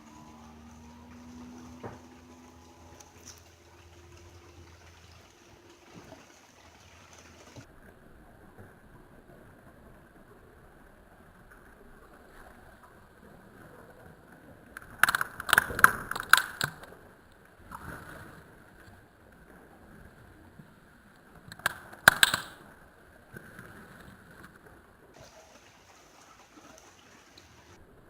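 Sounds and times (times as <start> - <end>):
slime squeezed with pops and clicks: 22.1 - 22.6.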